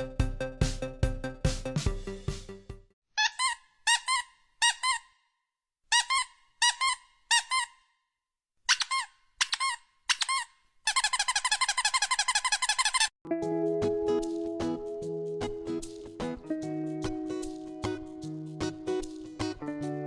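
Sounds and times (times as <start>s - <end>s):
music: 0.0s - 2.9s, 13.2s - 20.0s
high-pitched squeaks: 3.2s - 5.2s, 5.9s - 7.9s, 8.7s - 13.1s.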